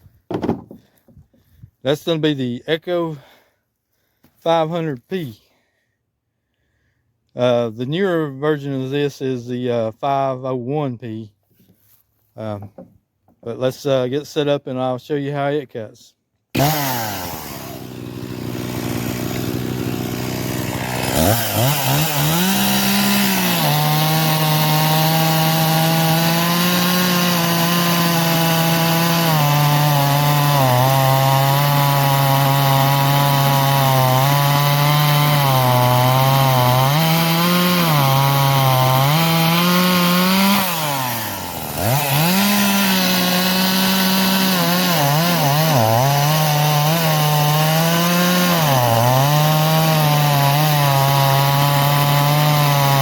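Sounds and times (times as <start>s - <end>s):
chainsaw cutting wood: 0.2s - 1.4s, 16.5s - 53.0s.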